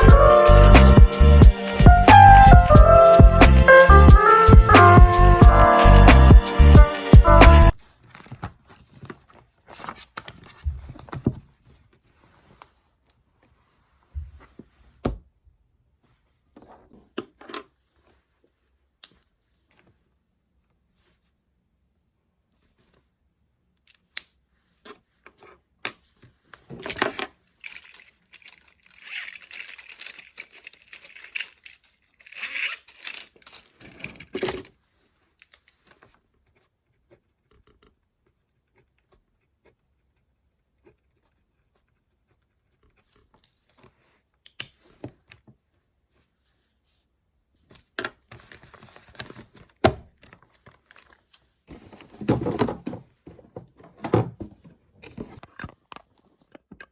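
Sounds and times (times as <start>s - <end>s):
small objects rustling and scraping: 24.6s - 38.0s, 50.3s - 53.4s.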